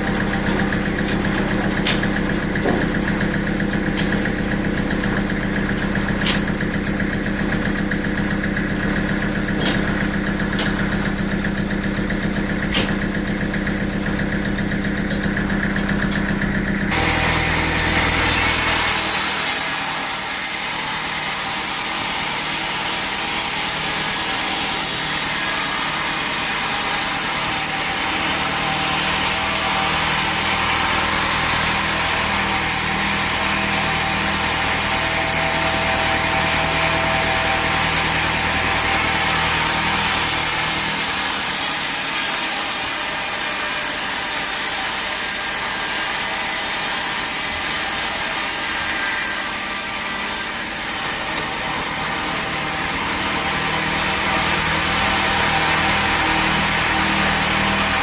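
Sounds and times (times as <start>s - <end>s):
sawmill machinery hum: 0.0s - 58.0s.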